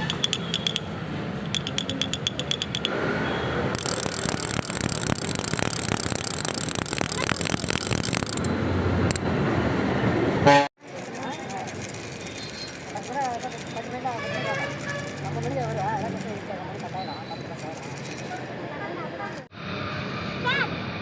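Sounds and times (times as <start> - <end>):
wooden toy rattles shaken: 0.0 - 2.9, 3.8 - 9.2, 10.8 - 18.5.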